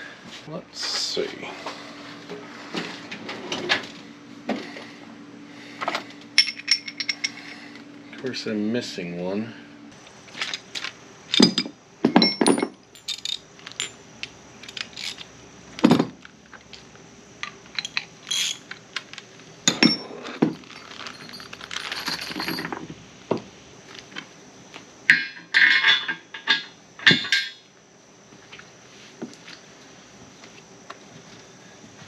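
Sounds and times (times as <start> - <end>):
rattling clatter of tools: 5.8 - 7.6, 10.4 - 14.0, 14.6 - 16.2, 17.7 - 23.0
metal tools clinking and knocking: 6.4 - 7.5, 11.3 - 14.0, 17.7 - 18.8, 19.7 - 22.9, 25.1 - 27.6.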